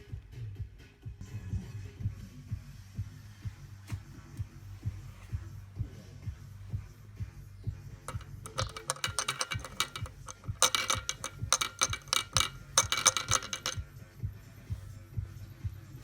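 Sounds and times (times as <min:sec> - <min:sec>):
rapid metallic clicking and rattling: 0:08.1 - 0:13.8.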